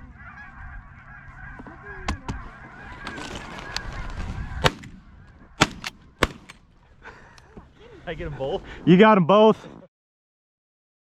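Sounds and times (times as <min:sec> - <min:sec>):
geese honking: 0:00.0 - 0:05.8
shotgun blasts: 0:04.6 - 0:05.0, 0:05.6 - 0:06.6.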